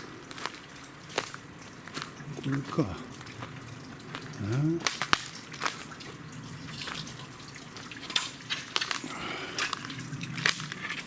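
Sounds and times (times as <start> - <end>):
sharp clicks and splashes: 0.0 - 11.0
small waterfall splashing on rock: 0.0 - 11.0.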